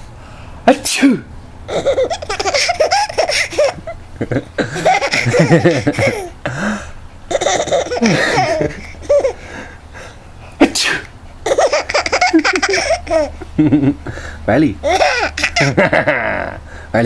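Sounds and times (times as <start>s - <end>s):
small child laughing: 1.7s - 6.6s, 7.3s - 9.7s, 11.4s - 14.2s, 14.8s - 16.6s
sneeze: 10.6s - 11.1s.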